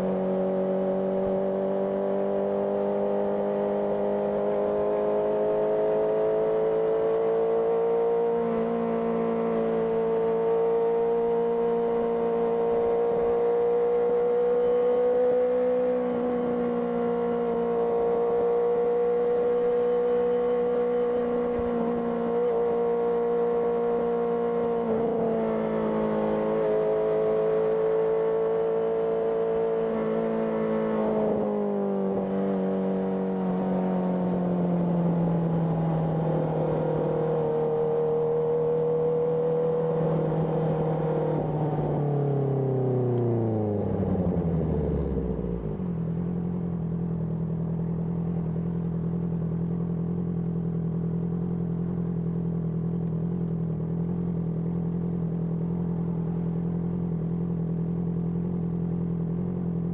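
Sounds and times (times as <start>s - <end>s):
motorcycle engine revving down to idle: 35.8s - 59.9s.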